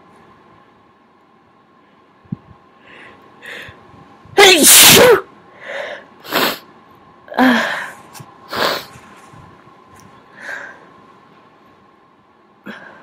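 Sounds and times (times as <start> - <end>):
person sneezing: 4.4 - 5.2.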